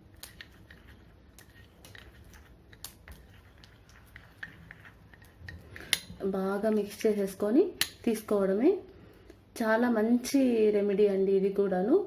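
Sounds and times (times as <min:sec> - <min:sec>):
spoon tapping and scraping bowl: 0:00.1 - 0:07.1
woman speaking: 0:06.2 - 0:08.9, 0:09.6 - 0:12.0.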